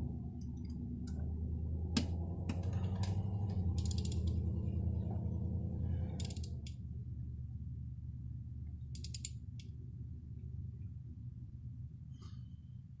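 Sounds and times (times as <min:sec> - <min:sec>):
steady low hum: 0:00.0 - 0:13.0
ratchet wrench clicking: 0:03.8 - 0:04.4, 0:06.2 - 0:06.8, 0:08.9 - 0:09.7.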